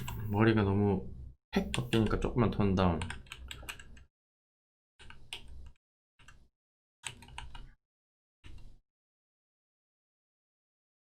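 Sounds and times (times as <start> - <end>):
mouse clicking: 1.6 - 2.2
computer keyboard clicking: 3.0 - 4.1, 7.0 - 7.7.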